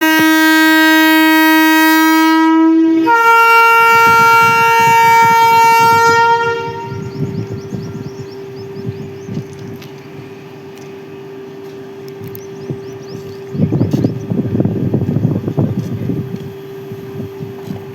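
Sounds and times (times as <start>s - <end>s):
locomotive horn: 0.0s - 8.8s.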